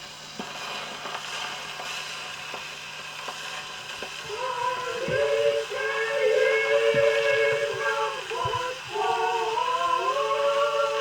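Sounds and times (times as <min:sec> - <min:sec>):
gramophone record surface hiss: 0:00.0 - 0:11.0
choir singing long notes: 0:04.3 - 0:11.0.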